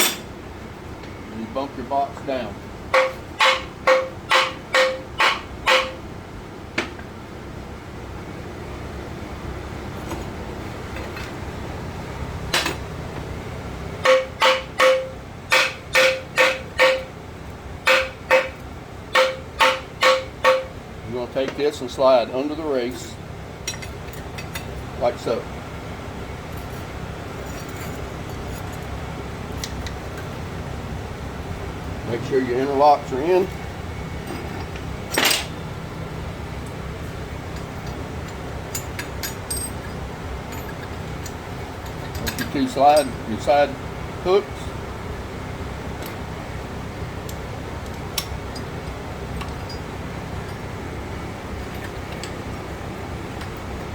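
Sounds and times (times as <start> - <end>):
low shop hum: 0.0 - 53.9
hammer striking steel: 2.9 - 6.0, 14.0 - 17.1, 17.8 - 20.8
light clicks of steel pieces: 29.6 - 30.3, 37.6 - 43.2, 47.3 - 50.6.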